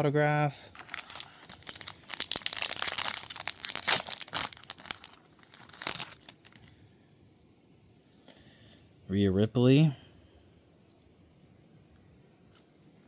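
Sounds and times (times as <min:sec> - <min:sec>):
plastic wrapper crinkling and tearing: 0:00.7 - 0:06.8.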